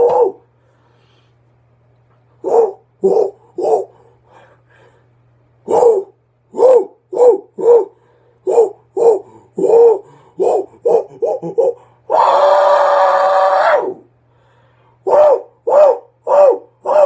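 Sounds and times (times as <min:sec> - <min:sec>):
creature hooting grunts: 0:08.5 - 0:12.9.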